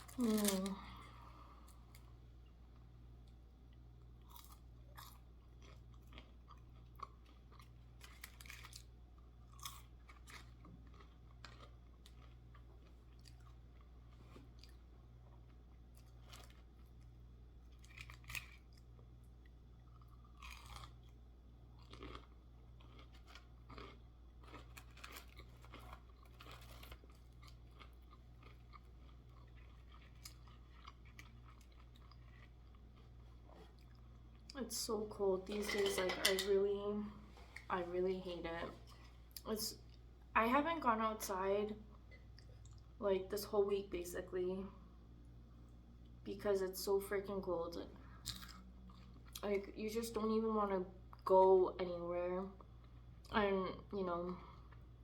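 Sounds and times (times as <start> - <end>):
faint low hum: 0.0 - 55.0
person chewing crunchy food: 2.7 - 34.6, 48.2 - 49.4.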